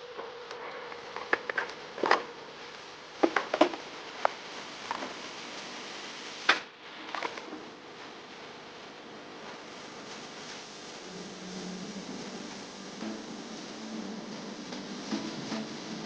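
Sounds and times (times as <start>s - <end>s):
steady hiss: 0.0s - 16.0s.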